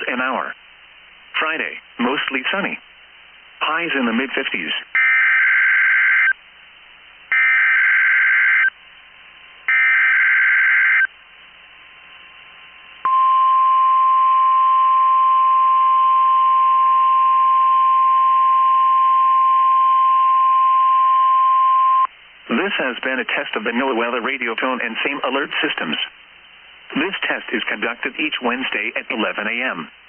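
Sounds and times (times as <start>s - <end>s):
radio hiss: 0.0s - 10.1s, 22.0s - 30.0s
steady warning alarm tone: 5.0s - 6.4s, 7.3s - 8.7s, 9.7s - 11.1s.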